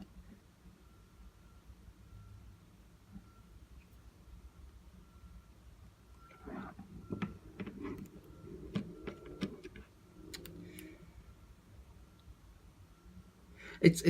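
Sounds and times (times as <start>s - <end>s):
faint steady hum: 0.0s - 14.0s
clicks and taps handling phone: 7.1s - 10.9s.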